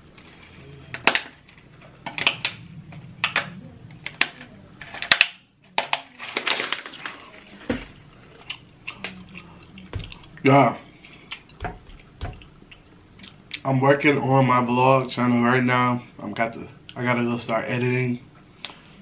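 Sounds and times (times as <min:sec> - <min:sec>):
wet chewing and lip smacks: 0:08.4 - 0:10.4, 0:11.0 - 0:13.7.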